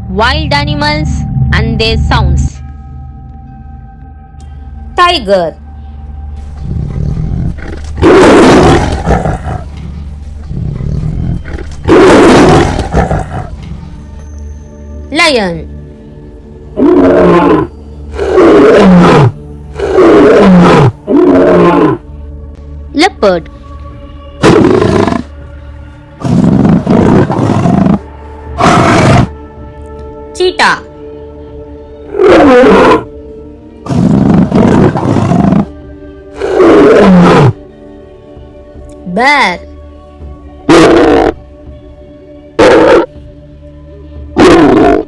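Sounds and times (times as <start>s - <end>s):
soft background music: 0.0s - 45.0s
cheetah snarling and growling: 6.4s - 13.9s, 16.8s - 22.1s, 24.4s - 25.3s, 26.2s - 29.4s, 32.1s - 33.1s, 33.8s - 37.6s, 40.7s - 41.5s, 42.5s - 43.1s, 44.4s - 45.0s
lion roaring: 6.4s - 13.9s, 16.8s - 22.0s, 24.4s - 25.3s, 26.2s - 29.4s, 32.1s - 33.1s, 33.8s - 35.7s, 36.3s - 37.6s, 40.7s - 41.4s, 42.6s - 43.1s, 44.4s - 45.0s.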